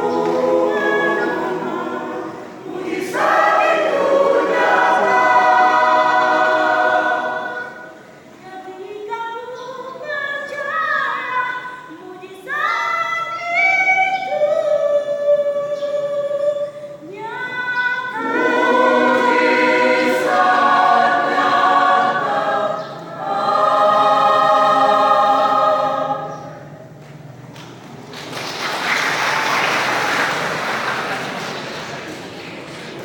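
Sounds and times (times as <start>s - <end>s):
church choir singing: 0.0s - 8.4s, 17.3s - 26.9s.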